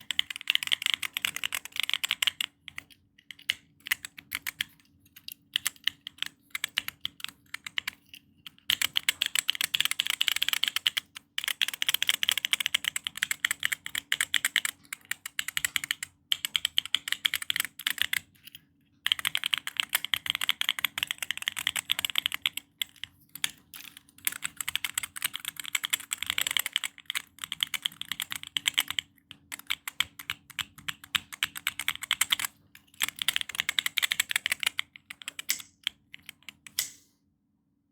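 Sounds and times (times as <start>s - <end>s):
keyboard keys clicking: 0.0s - 18.3s, 19.1s - 37.0s.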